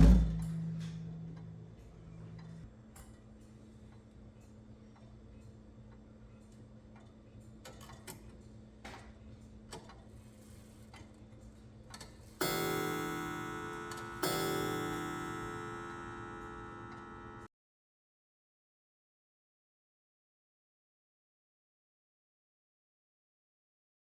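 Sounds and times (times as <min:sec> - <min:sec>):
clock striking on gong: 0:12.4 - 0:17.5
clock ticking faintly: 0:12.4 - 0:17.5.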